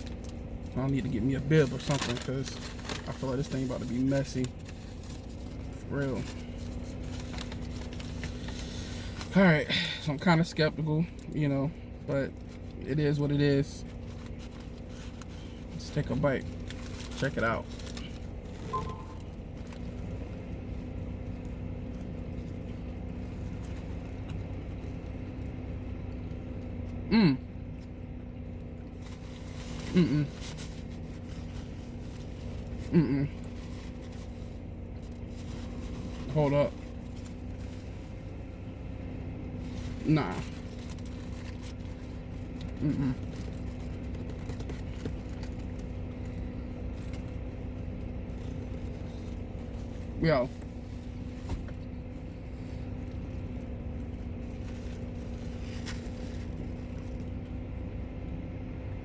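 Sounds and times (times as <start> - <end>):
car engine idling: 0.0 - 59.0
man humming while eating: 27.1 - 27.6, 29.9 - 30.4, 32.9 - 33.4.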